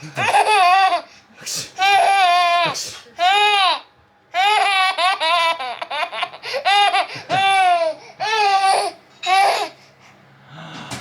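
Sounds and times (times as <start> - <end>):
baby laughing: 0.2 - 1.1, 4.4 - 9.7.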